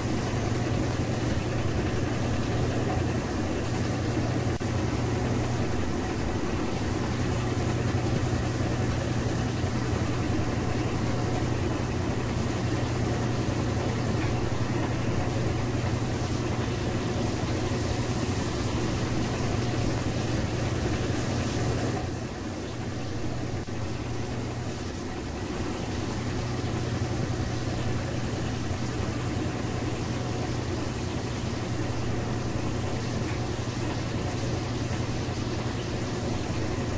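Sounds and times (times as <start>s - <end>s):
washing machines running: 0.0s - 36.9s.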